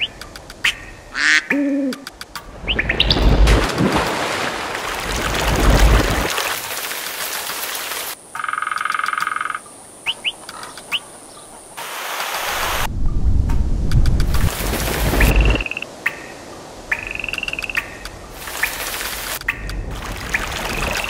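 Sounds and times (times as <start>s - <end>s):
rushing water: 2.2s - 8.3s, 10.9s - 12.9s, 14.2s - 21.0s.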